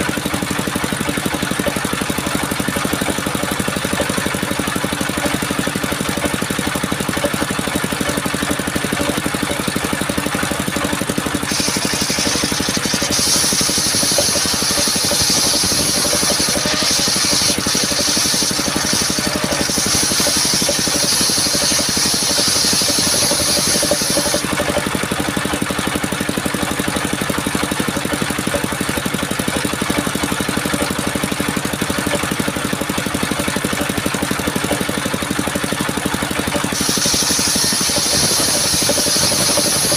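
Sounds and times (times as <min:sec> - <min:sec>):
sawmill engine running: 0:00.0 - 0:39.9
saw blade hissing through wood: 0:08.2 - 0:24.7, 0:36.0 - 0:39.9.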